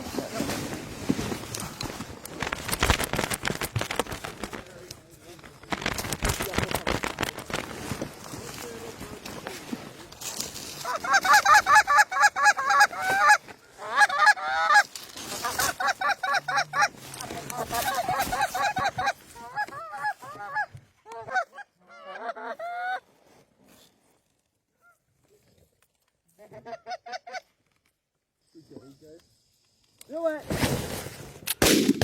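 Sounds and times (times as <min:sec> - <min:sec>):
geese honking: 0:10.7 - 0:23.0.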